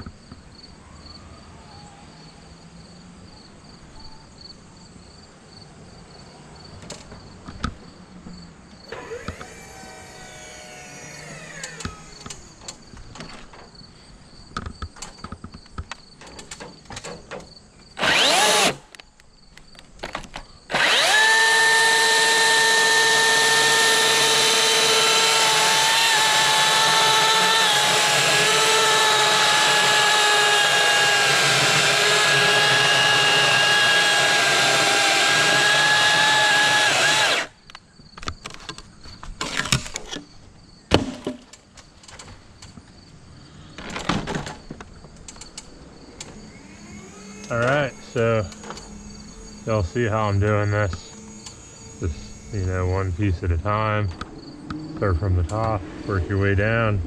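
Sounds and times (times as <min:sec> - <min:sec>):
power tool motor whining: 0:08.9 - 0:13.1, 0:18.0 - 0:19.0, 0:20.7 - 0:37.6, 0:46.1 - 0:54.4.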